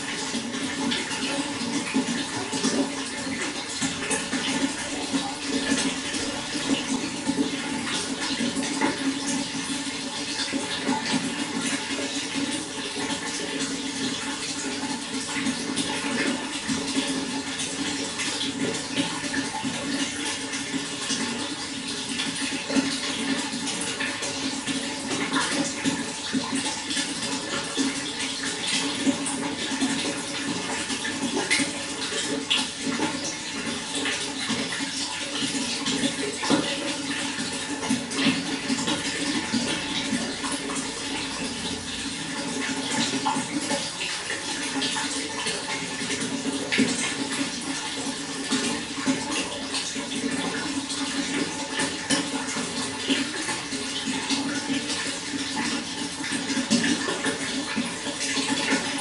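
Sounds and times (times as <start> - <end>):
running water flowing: 0.0 - 59.0.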